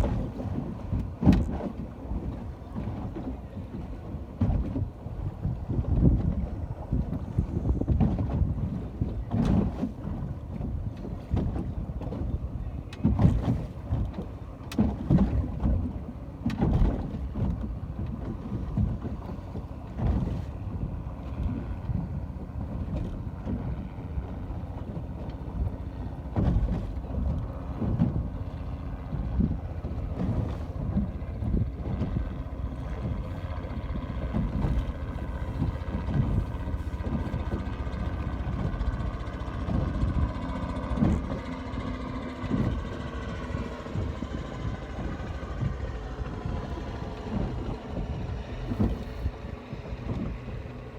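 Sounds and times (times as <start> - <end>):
faint motor hum: 0.0 - 50.9
ocean water: 0.0 - 50.9
wind buffeting microphone: 0.0 - 50.9.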